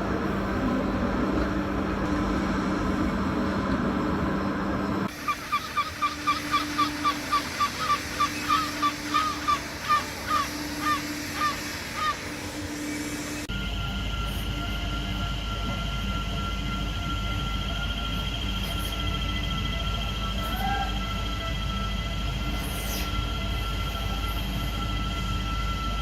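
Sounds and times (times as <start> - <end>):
rumbling noise with low hum: 0.0 - 26.0
gull calling: 5.1 - 12.6.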